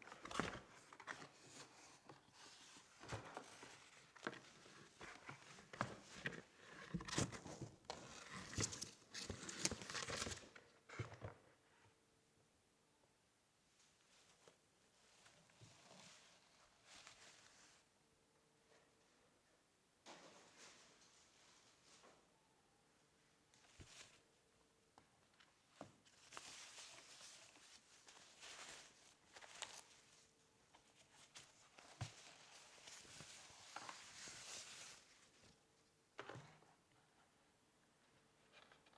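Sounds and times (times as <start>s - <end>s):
faint packaging rustling: 0.0s - 11.4s, 25.2s - 35.6s.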